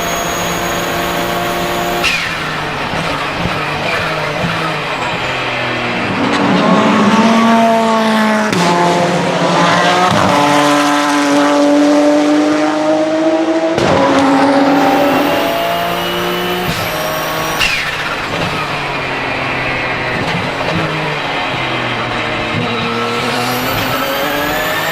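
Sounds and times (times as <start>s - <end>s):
high turbo whistle: 0.0s - 8.4s, 13.8s - 20.2s, 21.1s - 24.9s
car engine accelerating hard: 0.0s - 24.9s
gear upshifts: 0.0s - 24.9s.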